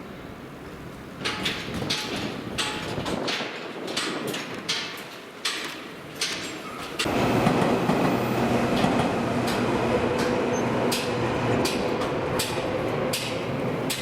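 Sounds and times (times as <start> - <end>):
wheels clacking over rail joints: 1.0 - 14.0
electric train rumble: 7.0 - 14.0.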